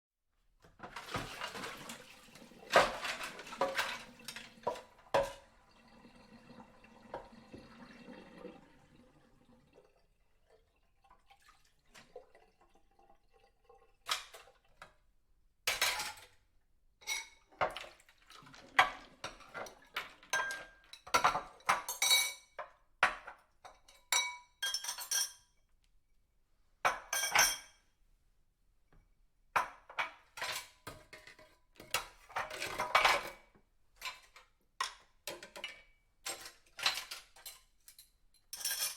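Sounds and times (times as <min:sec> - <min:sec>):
running water: 0:00.8 - 0:14.8
dishes clinking and clattering: 0:02.7 - 0:05.5, 0:15.7 - 0:16.4, 0:17.0 - 0:25.5, 0:26.9 - 0:27.8, 0:29.6 - 0:38.9.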